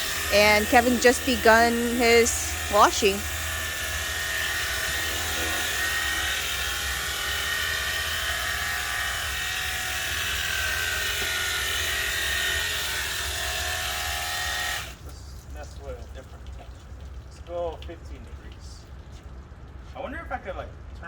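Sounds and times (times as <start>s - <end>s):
pressure washer pump whining: 0.0s - 15.0s.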